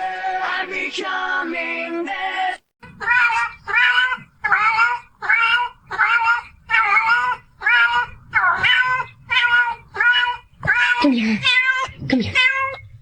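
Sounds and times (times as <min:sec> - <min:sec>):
cat meowing loudly: 0:02.8 - 0:12.9.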